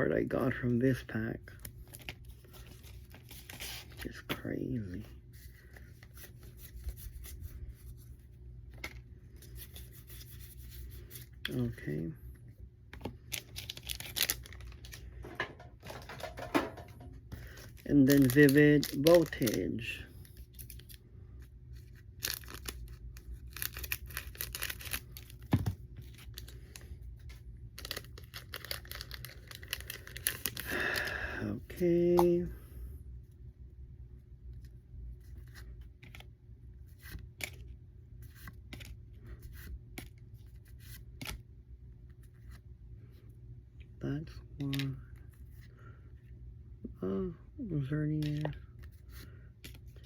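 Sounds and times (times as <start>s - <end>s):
cards rubbing and sliding: 5.2s - 11.7s
foil wrapper tearing and crinkling: 13.3s - 15.0s, 17.5s - 19.9s, 22.2s - 25.5s, 27.7s - 31.1s.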